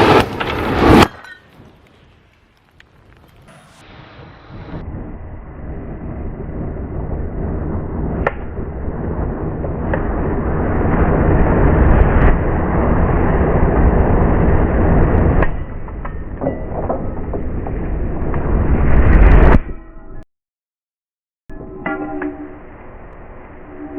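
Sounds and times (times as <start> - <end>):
crackles and pops of fire: 0.0 - 19.6.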